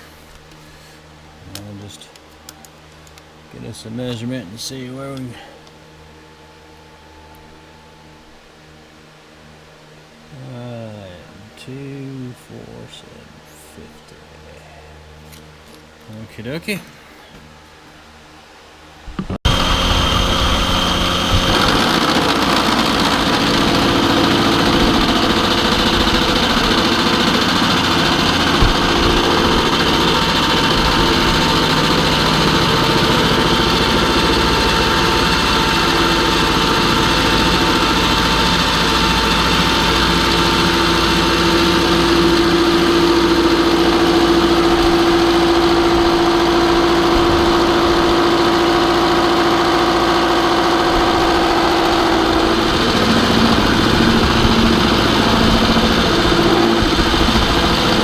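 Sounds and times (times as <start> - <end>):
machine tool motor and gear hum: 19.1 - 58.0
metal cutting noise: 19.2 - 58.0.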